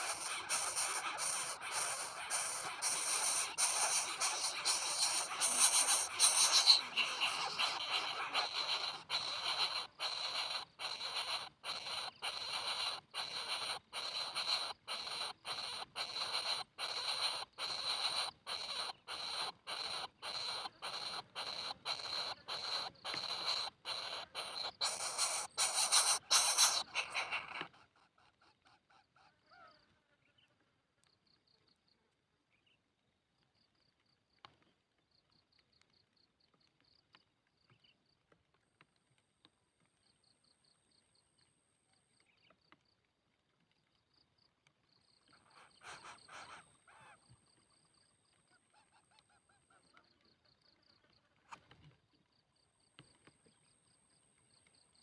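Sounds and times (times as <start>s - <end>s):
high rapid chirping: 0.0s - 27.6s
chicks rasping begging calls: 0.0s - 27.9s, 45.6s - 46.6s.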